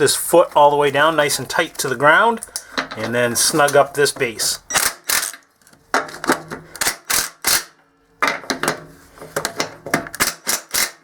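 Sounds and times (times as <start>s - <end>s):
ratchet wrench clicking: 4.8s - 5.4s, 6.8s - 7.7s.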